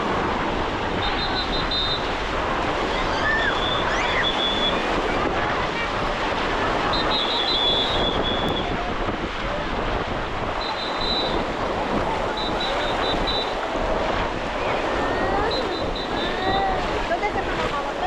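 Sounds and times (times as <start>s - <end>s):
crowded beach hubbub: 0.0s - 18.0s
distant voices: 0.0s - 18.0s
surf washing in: 0.0s - 18.0s.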